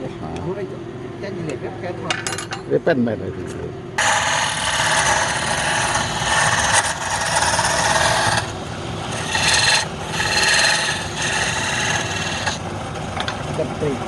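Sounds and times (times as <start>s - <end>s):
tool scraping wood on lathe: 4.0s - 13.4s.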